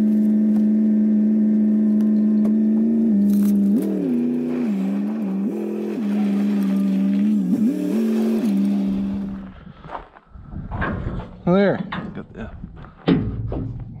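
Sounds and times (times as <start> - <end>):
truck engine revving: 0.0 - 9.6.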